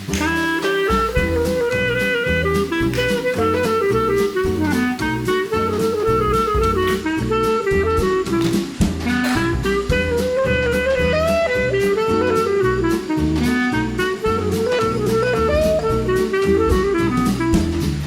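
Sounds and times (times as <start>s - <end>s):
jazz music with saxophone: 0.0s - 18.0s.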